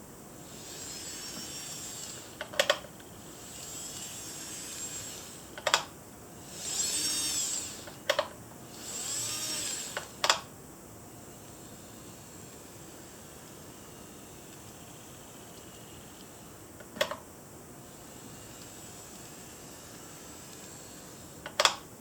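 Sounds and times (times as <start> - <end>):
sharp plastic clicks: 2.4 - 2.9, 5.6 - 5.9, 6.9 - 8.4, 9.9 - 10.5, 15.5 - 17.2, 20.0 - 21.9.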